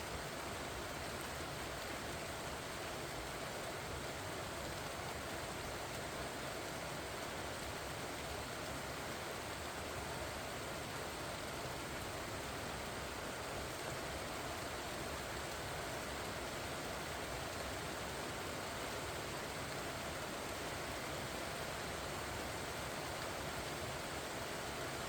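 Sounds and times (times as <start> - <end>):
rain on leaves: 0.0 - 25.0.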